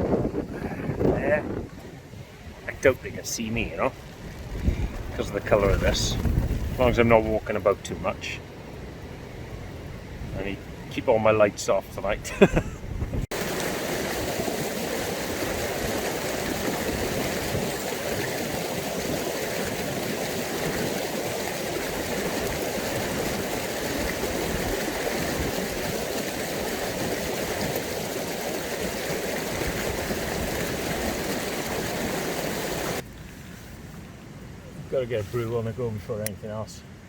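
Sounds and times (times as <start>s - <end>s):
steady rain falling: 13.3s - 33.0s.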